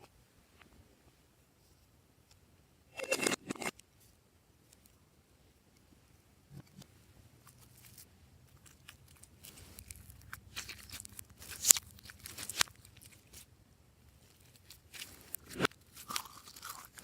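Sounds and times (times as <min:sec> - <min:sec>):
slime crackling and crunching: 0:07.8 - 0:13.5, 0:14.2 - 0:17.0.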